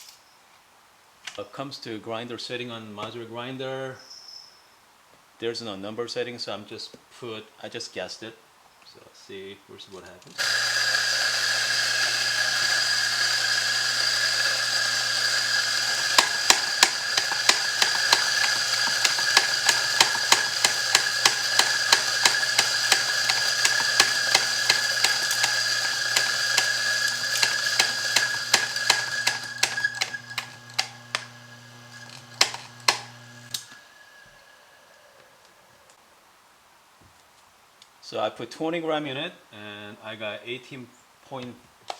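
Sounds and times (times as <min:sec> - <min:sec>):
rapid regular clicking: 0:10.4 - 0:33.7
coffee grinder motor grinding: 0:10.4 - 0:35.6.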